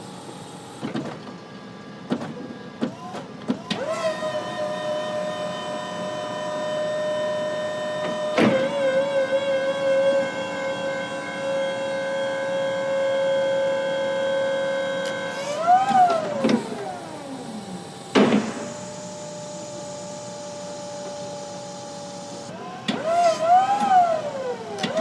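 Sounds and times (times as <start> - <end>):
electric motor whine: 3.8 - 25.0
sharp clunk: 18.1 - 18.7.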